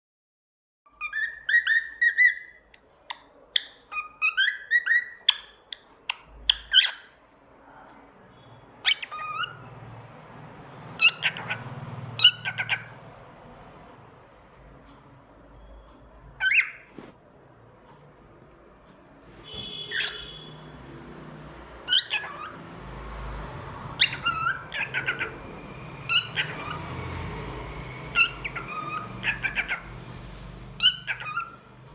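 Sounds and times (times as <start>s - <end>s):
cockatiel whistling and chirping: 1.0s - 2.6s, 3.5s - 7.1s, 8.8s - 9.6s, 11.0s - 11.6s, 12.2s - 13.0s, 15.6s - 17.1s, 19.4s - 20.6s, 21.8s - 22.6s, 23.9s - 31.6s.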